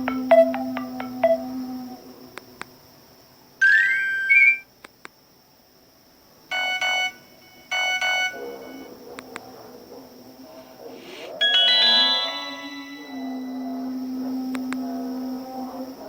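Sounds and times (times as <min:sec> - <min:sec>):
mobile phone electronic alert tones: 0:03.6 - 0:04.6, 0:06.5 - 0:08.9, 0:11.4 - 0:13.7.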